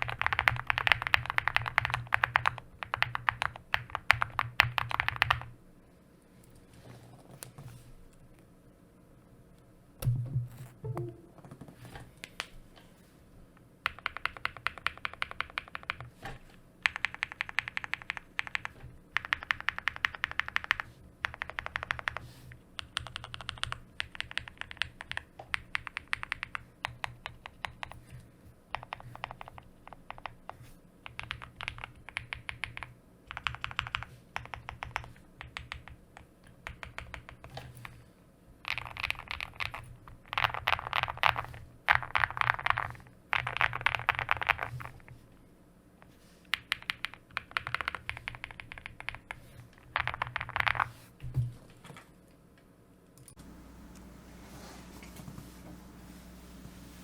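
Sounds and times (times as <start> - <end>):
mechanical keyboard typing: 0.0 - 5.5, 13.8 - 16.1, 16.8 - 22.2, 22.8 - 28.0, 28.7 - 38.0, 38.6 - 45.0, 46.5 - 50.9.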